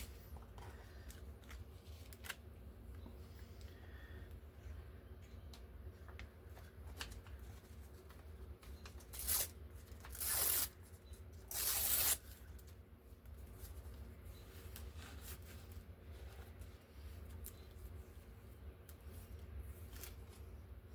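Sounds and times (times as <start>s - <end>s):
paper tearing: 9.0s - 10.8s, 11.5s - 12.2s.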